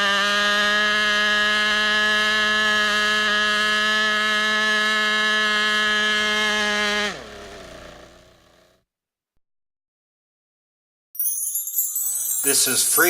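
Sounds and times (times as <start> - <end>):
model airplane engine buzzing: 0.0 - 8.7.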